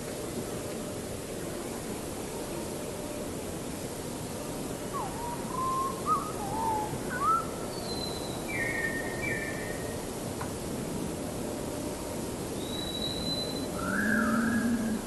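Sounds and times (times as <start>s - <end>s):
steady hiss: 0.0s - 15.0s
bird whistling: 5.0s - 9.5s, 12.6s - 15.0s.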